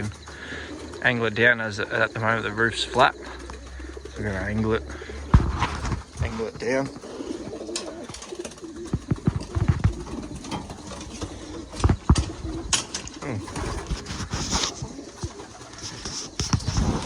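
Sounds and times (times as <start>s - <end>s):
pigeons cooing: 0.0s - 17.0s
sharp knocks and clatters: 8.0s - 15.4s.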